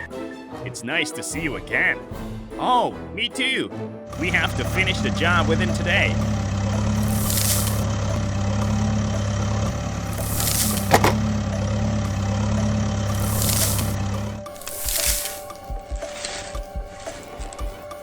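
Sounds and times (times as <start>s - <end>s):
vehicle engine idling: 4.1s - 15.4s
short hiss: 13.2s - 16.5s.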